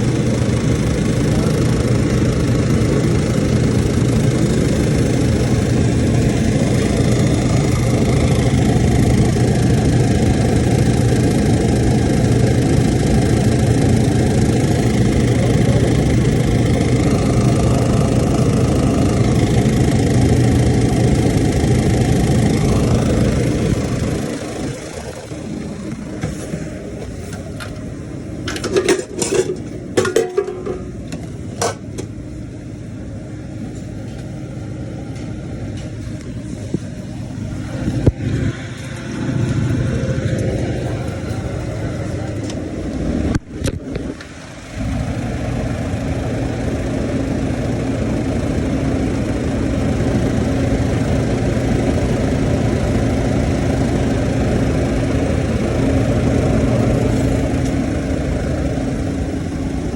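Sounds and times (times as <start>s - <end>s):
refrigerator unit humming: 0.0s - 59.9s
knocks and clatters: 28.5s - 32.1s.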